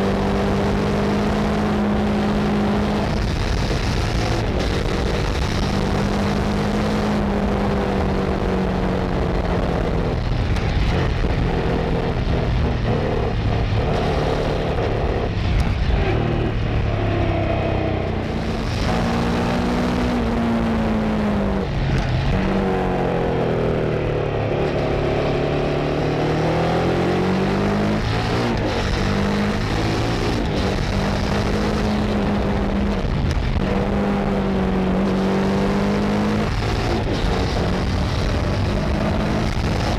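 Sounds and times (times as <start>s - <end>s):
motorcycle engine and exhaust: 0.0s - 39.9s
wind noise: 0.0s - 39.9s.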